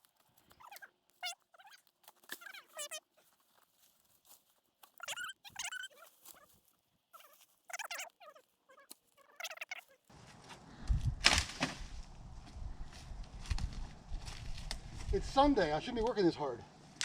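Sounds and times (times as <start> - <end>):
close rustling and thumping: 11.2 - 12.0.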